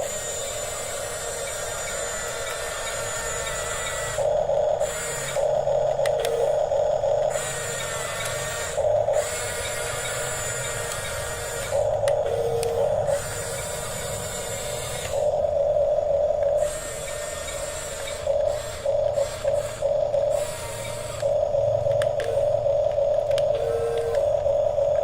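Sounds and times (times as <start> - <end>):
toy motors and gearboxes whirring: 0.0 - 25.0.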